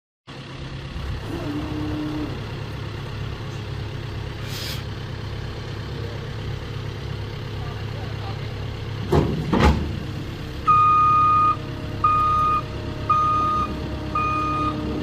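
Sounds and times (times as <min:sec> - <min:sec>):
diesel engine idling: 0:00.3 - 0:15.0
brief hiss: 0:04.4 - 0:04.9.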